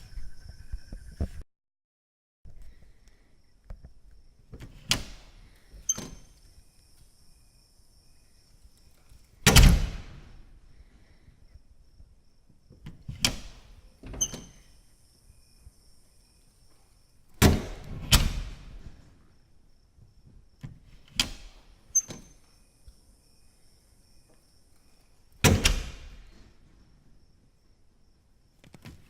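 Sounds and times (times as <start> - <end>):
door latch clicks: 4.6 - 5.2, 13.2 - 14.6, 21.1 - 22.3, 25.4 - 26.4
door shutting thuds: 9.4 - 10.3, 12.7 - 14.7, 17.4 - 19.1, 25.4 - 26.6.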